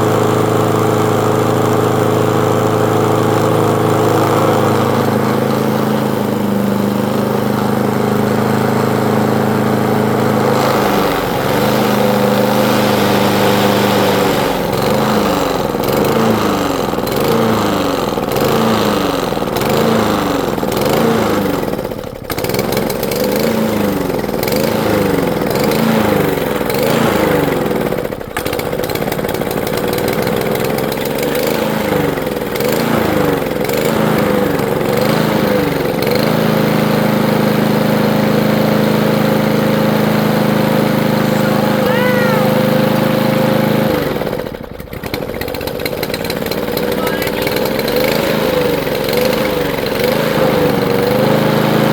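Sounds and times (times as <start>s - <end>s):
lawn mower engine running: 0.0s - 51.9s.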